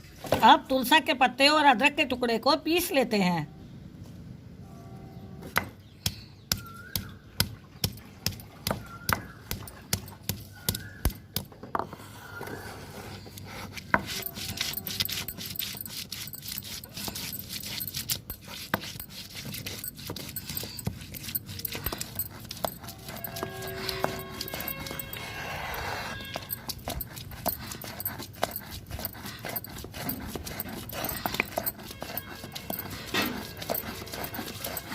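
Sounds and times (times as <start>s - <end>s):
pestle striking mortar: 5.5s - 11.5s, 26.3s - 34.9s
pestle crushing and grinding: 5.6s - 11.6s, 13.3s - 34.9s.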